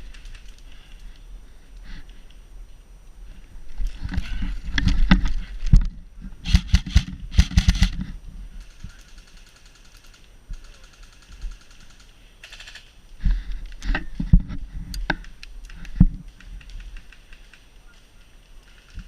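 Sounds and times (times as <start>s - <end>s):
airsoft guns firing bursts: 6.4s - 8.0s, 8.6s - 12.9s.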